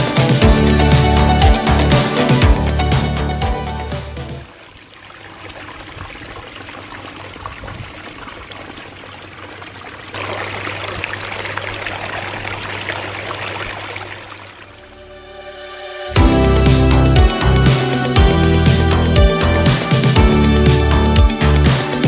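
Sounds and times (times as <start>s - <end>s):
water splashing down rocks: 4.4s - 14.9s.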